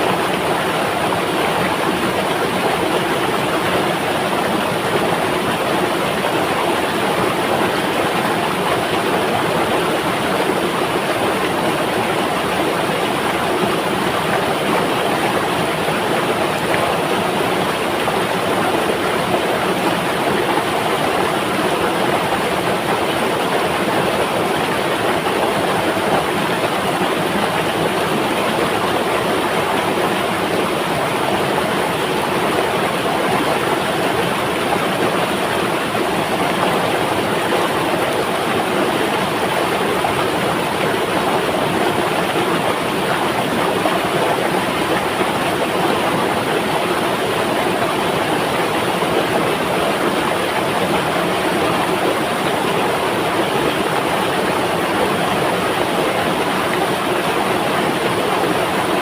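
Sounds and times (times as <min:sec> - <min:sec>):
river water flowing: 0:00.0 - 0:59.0.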